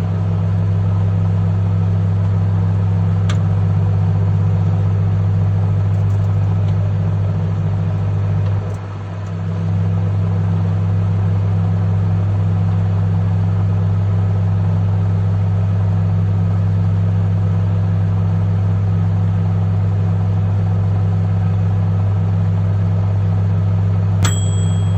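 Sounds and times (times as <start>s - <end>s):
microwave oven humming: 0.9s - 11.0s, 22.2s - 24.9s.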